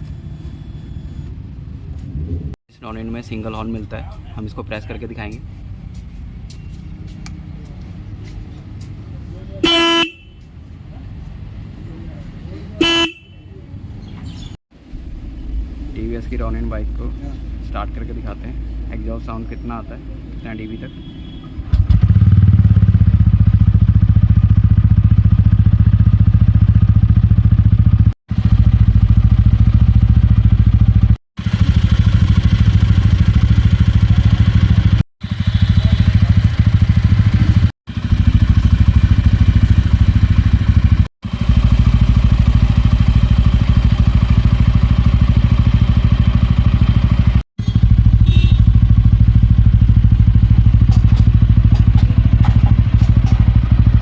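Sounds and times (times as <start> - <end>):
motorcycle engine idling: 12.8 - 13.4, 20.0 - 54.0.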